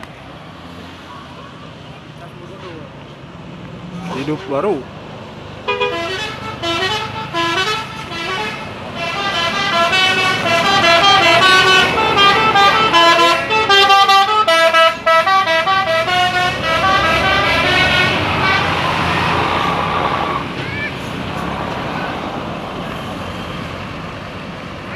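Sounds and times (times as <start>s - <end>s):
traffic noise: 0.0s - 24.9s
musical bus horn melody: 5.6s - 20.4s.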